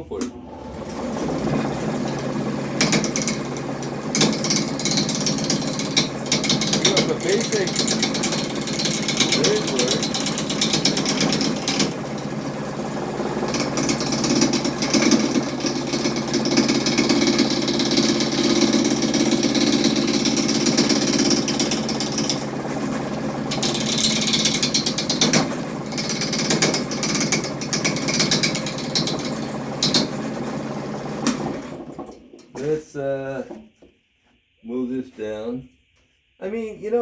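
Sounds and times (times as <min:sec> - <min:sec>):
wood lathe motor hum: 0:00.0 - 0:33.9
chisel scraping spinning wood: 0:00.9 - 0:32.8.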